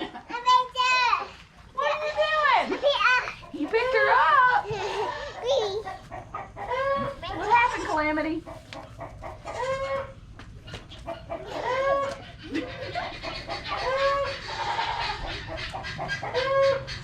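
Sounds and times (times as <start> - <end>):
goat kid bleating: 6.6 - 8.1, 9.4 - 10.1, 11.4 - 12.2, 13.8 - 15.2.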